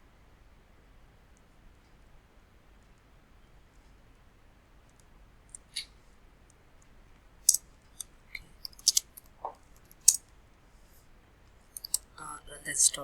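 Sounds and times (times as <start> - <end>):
mouse and keyboard clicks: 5.6 - 5.9, 7.5 - 9.3, 9.9 - 10.2, 11.8 - 12.1.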